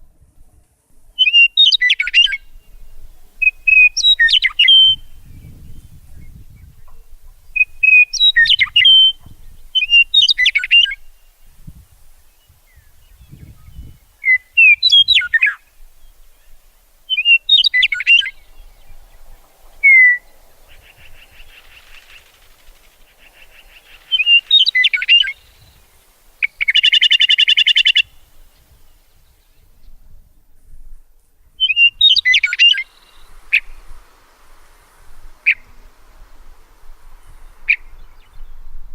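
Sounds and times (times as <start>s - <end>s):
songbirds chirping and whistling: 1.1s - 30.2s, 31.4s - 38.9s
bird buzzy trill: 1.2s - 5.3s.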